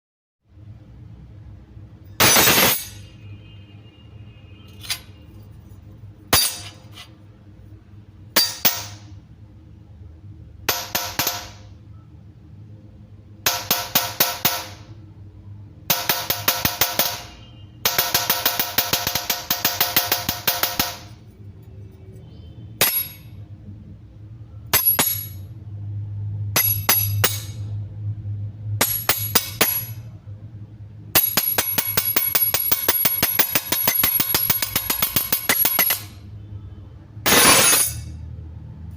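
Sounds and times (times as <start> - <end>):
metal spoon striking: 4.7 - 5.2, 6.4 - 7.1, 8.4 - 9.0, 22.8 - 23.4, 24.7 - 25.5, 26.5 - 27.7, 28.8 - 30.0, 31.2 - 36.2.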